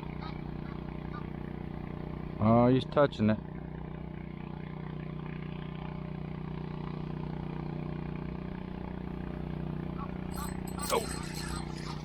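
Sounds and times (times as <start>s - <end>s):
low motor hum: 8.4s - 12.0s.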